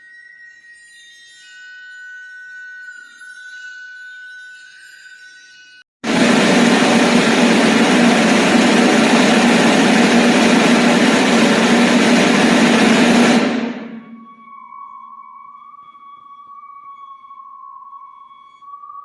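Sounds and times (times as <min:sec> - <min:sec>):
loud rushing noise: 0:06.1 - 0:14.3
low hum: 0:06.1 - 0:14.4.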